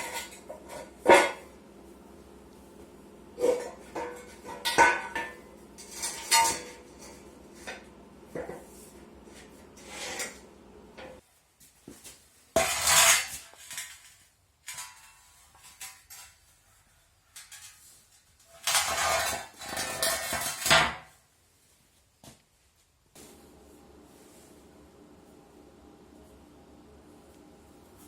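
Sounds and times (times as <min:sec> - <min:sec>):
low background hum: 0:00.0 - 0:11.2, 0:23.1 - 0:28.0.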